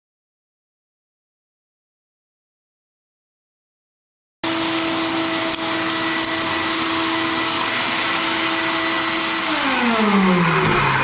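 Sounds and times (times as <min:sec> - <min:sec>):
vacuum motor whine and hiss: 0:04.4 - 0:11.0.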